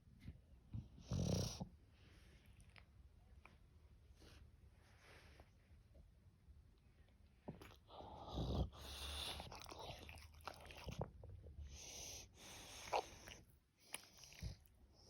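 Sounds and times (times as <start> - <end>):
dog snoring: 0.7 - 1.7, 8.0 - 10.2.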